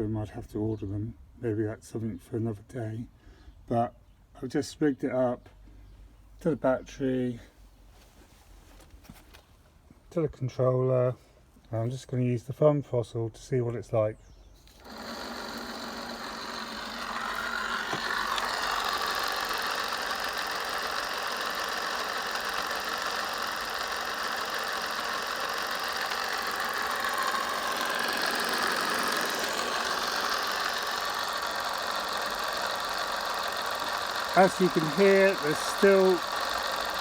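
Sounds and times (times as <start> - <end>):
electric bike motor running: 14.6 - 37.0
rumbling bearing: 14.8 - 37.0.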